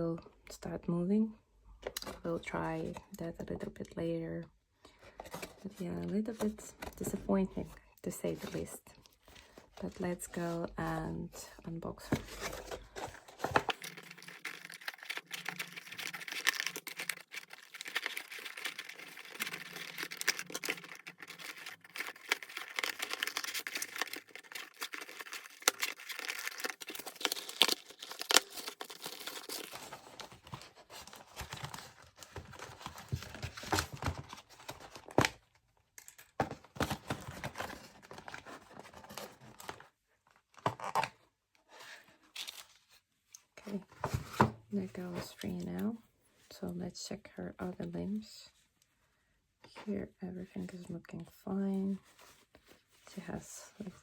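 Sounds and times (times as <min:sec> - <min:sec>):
packaging crinkling and tearing: 0:12.4 - 0:39.8.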